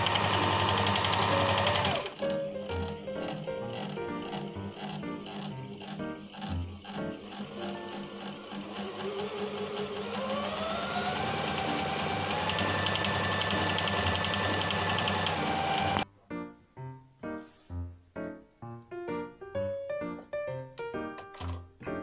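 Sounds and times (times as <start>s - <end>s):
needle mechanism ticking: 0.0s - 16.0s
sewing machine motor whine: 0.0s - 16.0s.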